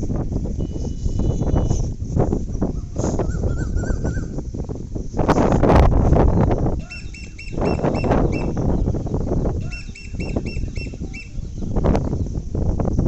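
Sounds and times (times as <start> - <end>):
small birds chirping: 0.3 - 13.0.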